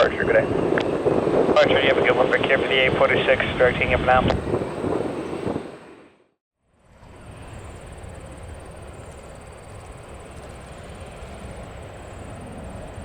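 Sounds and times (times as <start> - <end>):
distant jet engine: 0.0 - 13.0.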